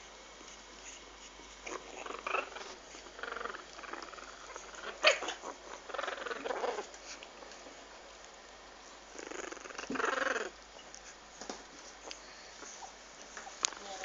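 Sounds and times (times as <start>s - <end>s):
puppies making short sounds: 0.8s - 7.2s.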